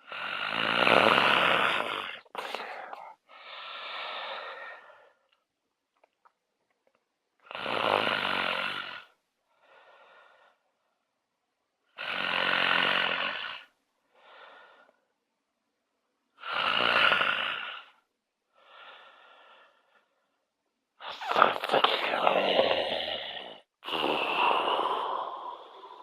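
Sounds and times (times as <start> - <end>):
rattling snores: 0.0 - 2.7, 7.5 - 9.1, 12.0 - 13.7, 16.4 - 17.9, 21.0 - 26.0
quiet breath: 1.5 - 5.4, 9.0 - 11.0, 13.6 - 15.2, 17.8 - 26.0.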